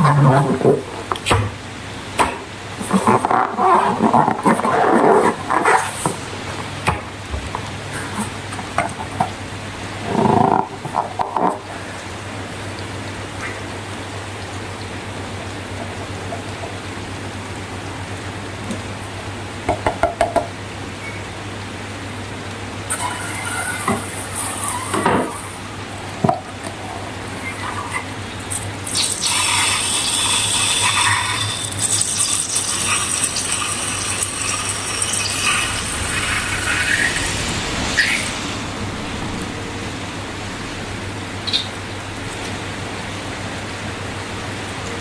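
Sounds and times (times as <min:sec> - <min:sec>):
liquid being poured: 0:26.6 - 0:40.8
steady low hum: 0:32.8 - 0:45.0.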